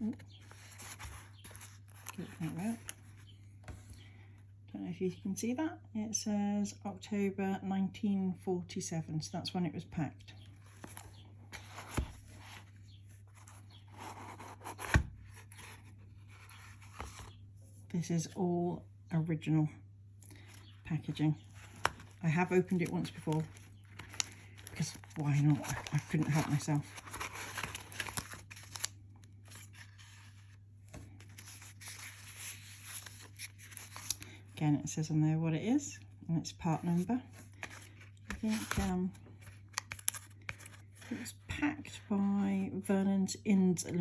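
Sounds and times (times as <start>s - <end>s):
paper packaging rustling: 0.2s - 3.9s, 21.4s - 34.4s, 37.3s - 41.1s.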